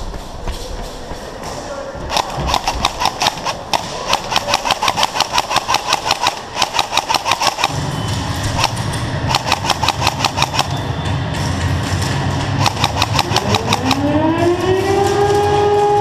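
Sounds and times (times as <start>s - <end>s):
airsoft guns firing: 2.0s - 10.8s, 11.4s - 14.1s
steady low rumble: 7.6s - 14.8s.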